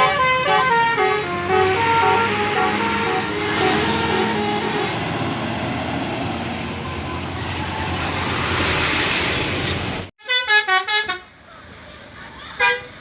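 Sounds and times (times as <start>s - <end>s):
multi-tone horn melody: 0.0s - 5.4s, 10.2s - 11.3s
passing vehicle engine and road noise: 0.0s - 10.1s.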